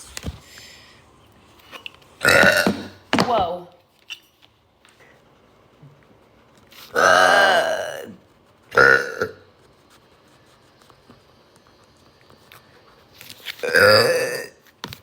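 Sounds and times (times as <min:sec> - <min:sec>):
woman burping: 0:02.2 - 0:03.0, 0:07.0 - 0:08.2, 0:08.8 - 0:09.4, 0:13.6 - 0:14.6.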